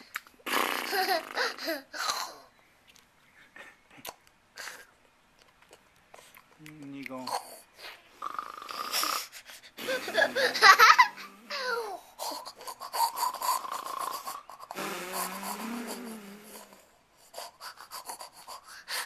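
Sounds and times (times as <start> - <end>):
wheezy snore-like breaths: 13.0 - 19.0.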